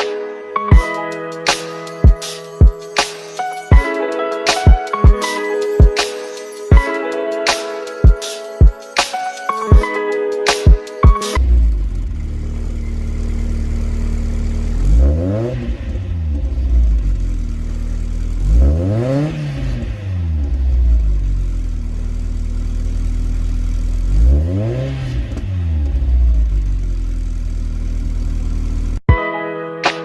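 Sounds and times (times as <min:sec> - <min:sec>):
car engine idling and revving: 0:11.4 - 0:29.0.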